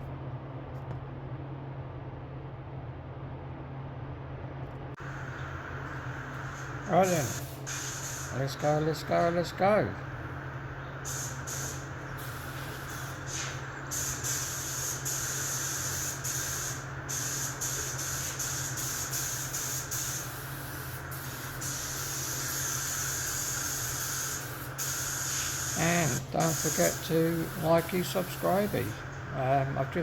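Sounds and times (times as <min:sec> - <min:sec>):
low hum: 0:00.0 - 0:14.6
spray gun hissing: 0:05.1 - 0:30.0.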